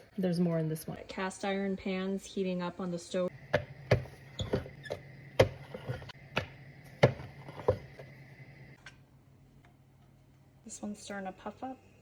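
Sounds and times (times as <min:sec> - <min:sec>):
steady hum: 0:03.3 - 0:10.2
kitchen knocks and taps: 0:03.5 - 0:08.0.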